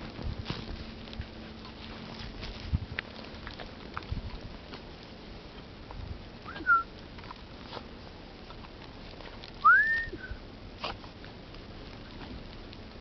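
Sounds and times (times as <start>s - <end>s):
person whistling: 6.5s - 6.9s, 9.6s - 10.4s.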